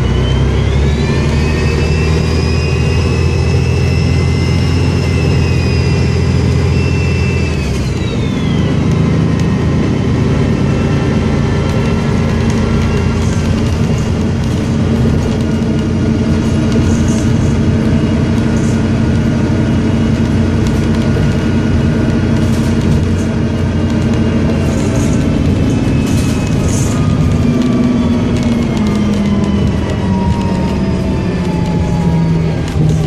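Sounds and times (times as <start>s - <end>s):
turbocharger whistle: 0.0s - 11.2s
bus engine drone: 0.0s - 33.0s.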